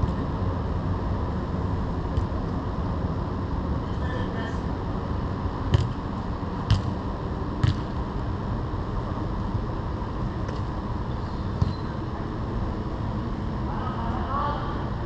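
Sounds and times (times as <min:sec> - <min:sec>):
steady rushing noise: 0:00.0 - 0:15.0
football being kicked: 0:05.7 - 0:06.0, 0:06.7 - 0:06.9, 0:07.6 - 0:07.9.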